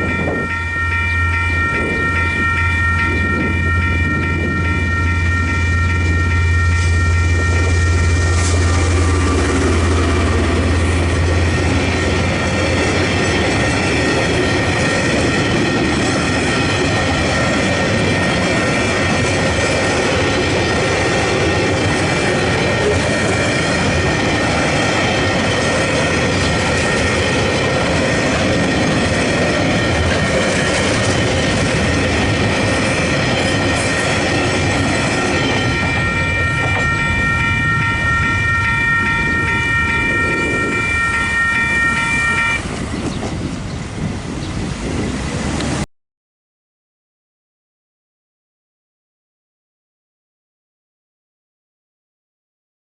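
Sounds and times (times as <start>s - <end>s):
level crossing bells ringing: 0.0s - 10.7s
deep train engine drone: 0.0s - 45.9s.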